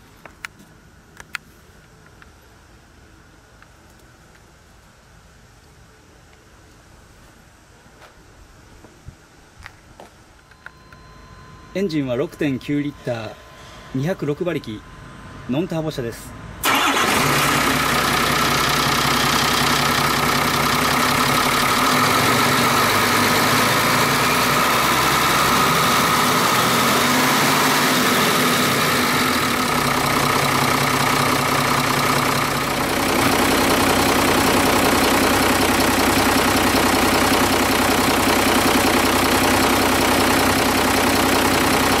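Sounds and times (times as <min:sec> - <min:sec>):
diesel truck engine idling: 0:12.2 - 0:42.0.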